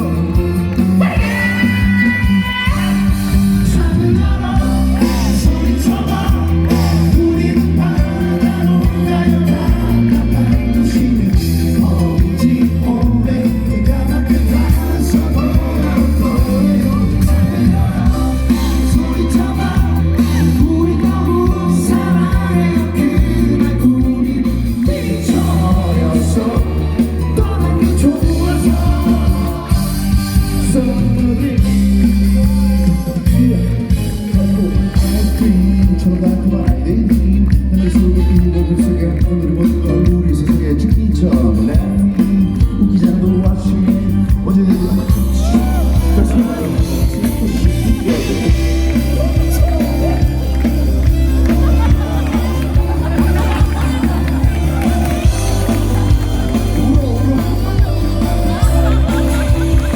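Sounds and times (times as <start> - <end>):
man singing: 0.0 - 59.9
rock band with heavy bass: 0.0 - 59.9.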